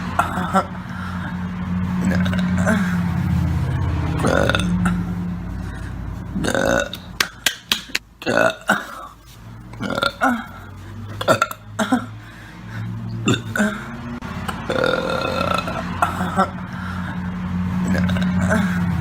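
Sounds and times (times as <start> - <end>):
woman burping: 6.4 - 7.1, 8.2 - 9.2, 9.8 - 12.2, 13.2 - 13.8.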